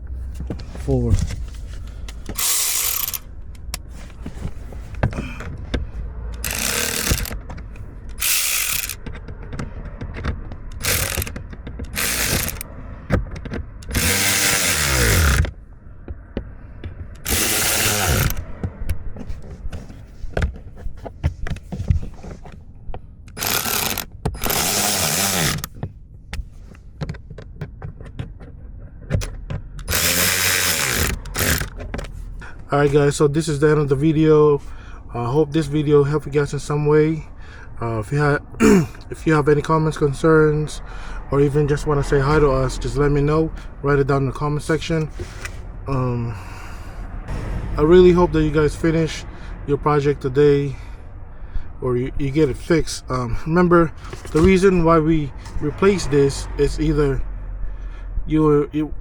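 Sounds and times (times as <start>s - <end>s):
tool handling clicks and knocks: 0.3s - 32.3s, 54.0s - 54.6s
power driver motor bursts: 2.3s - 3.3s, 6.4s - 7.4s, 8.1s - 9.0s, 10.8s - 11.3s, 11.9s - 12.7s, 13.8s - 15.5s, 17.2s - 18.4s, 23.4s - 25.7s, 29.8s - 31.7s.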